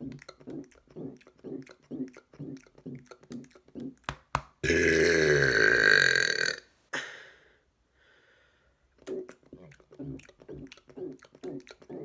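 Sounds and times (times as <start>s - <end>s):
mouth clicks: 0.0s - 6.6s, 9.0s - 12.0s
man burping: 4.6s - 6.6s.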